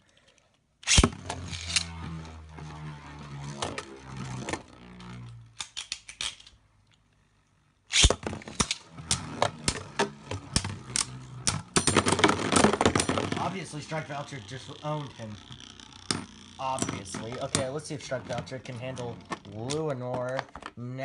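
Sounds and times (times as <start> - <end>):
spinning top launcher snap: 0.8 - 1.9
spinning tops whirring hum: 8.8 - 19.2.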